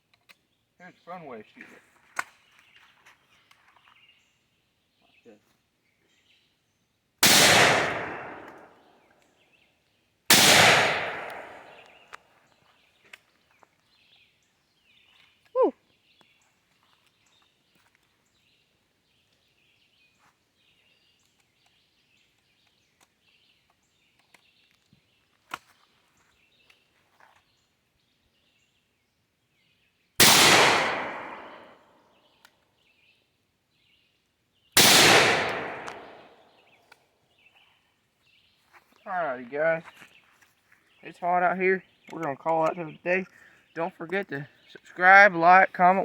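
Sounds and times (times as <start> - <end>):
shotgun blasts with echo: 7.2 - 8.8, 10.3 - 12.0, 30.2 - 31.8, 34.8 - 36.4.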